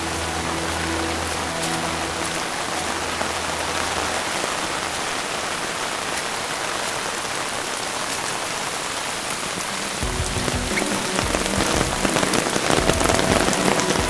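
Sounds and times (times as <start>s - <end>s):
heavy rain falling: 0.0s - 14.0s.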